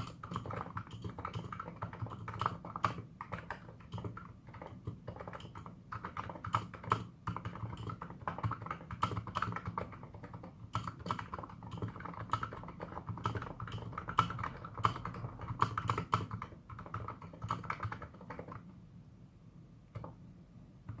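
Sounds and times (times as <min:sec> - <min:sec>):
keyboard typing: 0:00.0 - 0:18.7, 0:19.9 - 0:20.2.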